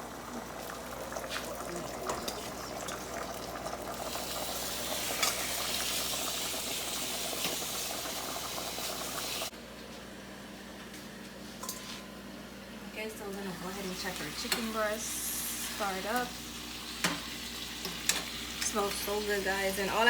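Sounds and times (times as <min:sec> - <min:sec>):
chicken sizzling in butter: 0:01.2 - 0:09.5.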